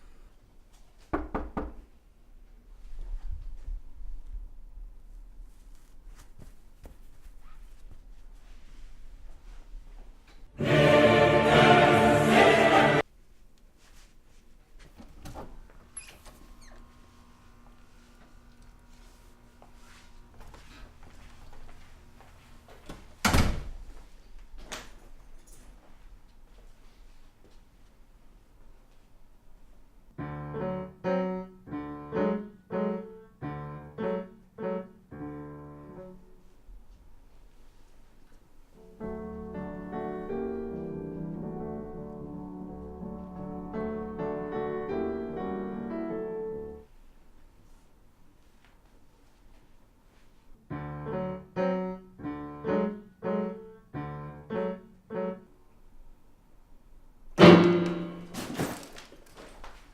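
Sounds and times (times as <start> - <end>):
piano playing slow chords: 30.2 - 36.3, 38.8 - 46.9, 50.7 - 55.5, 57.4 - 58.4.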